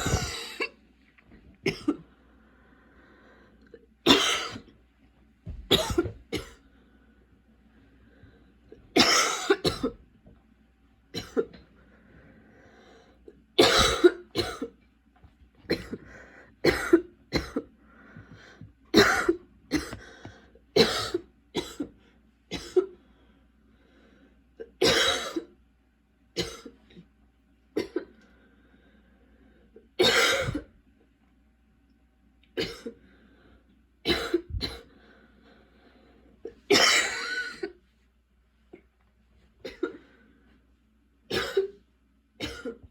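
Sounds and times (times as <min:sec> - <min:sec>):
woman coughing: 0:00.0 - 0:00.8, 0:01.7 - 0:02.0, 0:04.1 - 0:04.7, 0:05.7 - 0:06.6, 0:09.0 - 0:10.0, 0:11.2 - 0:11.6, 0:13.6 - 0:14.8, 0:15.7 - 0:17.7, 0:19.0 - 0:20.0, 0:20.8 - 0:21.9, 0:24.8 - 0:25.5, 0:26.4 - 0:26.8, 0:30.0 - 0:30.7, 0:32.6 - 0:33.0, 0:34.1 - 0:34.9, 0:36.7 - 0:37.8, 0:39.6 - 0:40.0, 0:41.3 - 0:41.8, 0:42.4 - 0:42.9.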